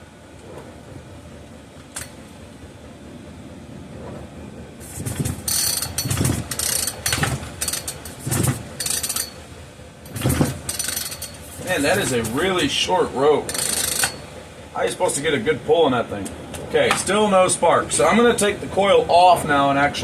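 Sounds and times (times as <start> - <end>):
chainsaw recoil starter rope rasping: 5.0 - 9.4, 10.1 - 12.6, 13.5 - 14.3.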